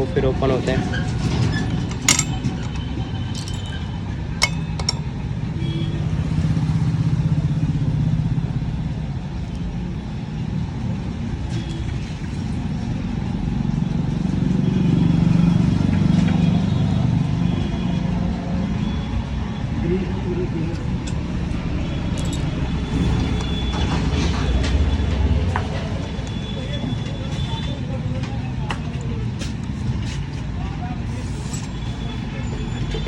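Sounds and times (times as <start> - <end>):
low drone of motor vehicles: 0.0 - 33.0
metal tool clinks and knocks: 1.8 - 5.1, 22.0 - 23.6.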